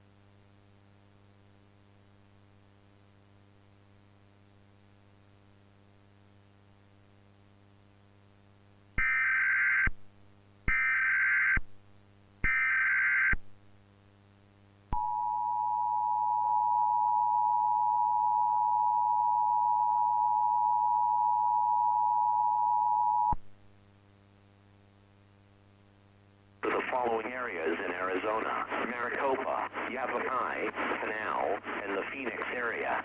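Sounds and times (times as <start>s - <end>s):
faint low hum: 14.3s - 33.0s.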